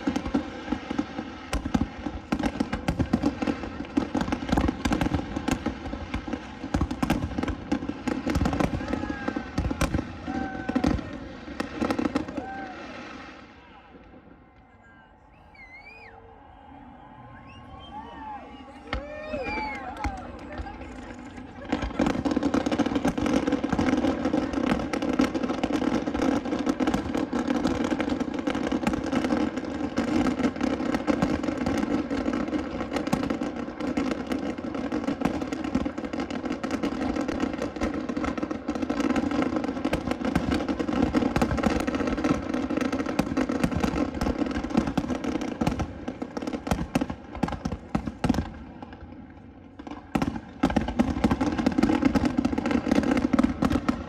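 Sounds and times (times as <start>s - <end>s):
fireworks bangs and crackles: 0.0s - 16.5s, 17.4s - 54.0s.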